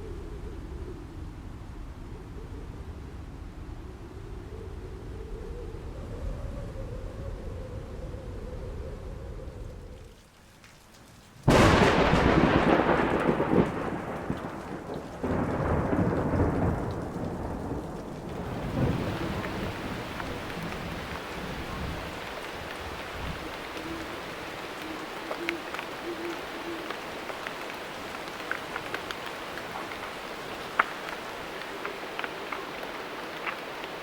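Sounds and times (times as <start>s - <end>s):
steady rain: 6.8s - 34.0s
thunderclap rumbling: 11.4s - 34.0s.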